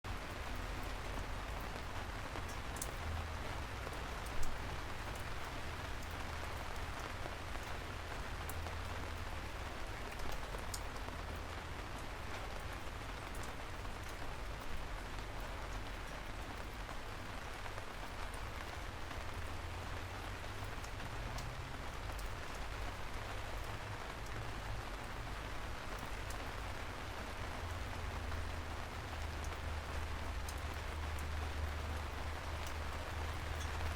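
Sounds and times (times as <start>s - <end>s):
rain falling: 0.0s - 33.9s.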